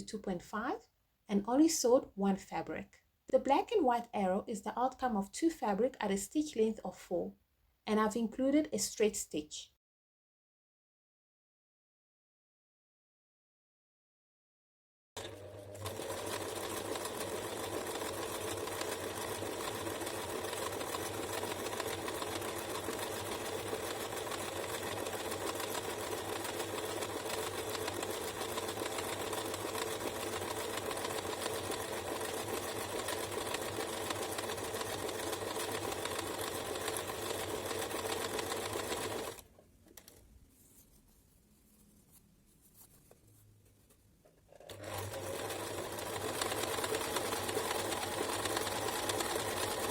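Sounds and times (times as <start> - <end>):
sewing machine running: 15.2 - 39.5, 44.6 - 49.9.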